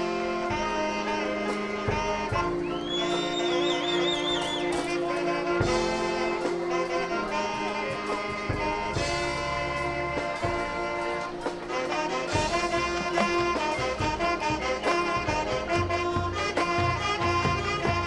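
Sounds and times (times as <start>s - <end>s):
marching band playing: 0.0s - 18.0s
steady drum pulse: 4.7s - 18.0s.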